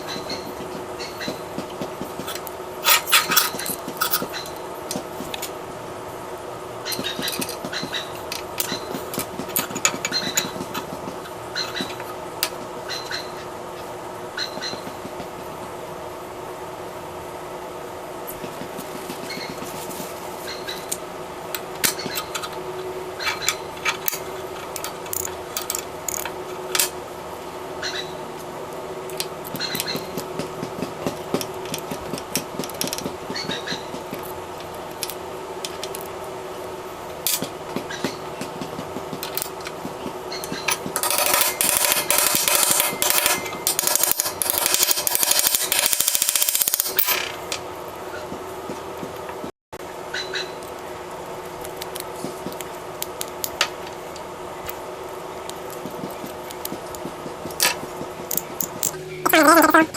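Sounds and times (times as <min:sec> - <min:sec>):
steady background hum: 0:00.0 - 0:59.9
metal clicks of ratchet parts: 0:23.2 - 0:26.9.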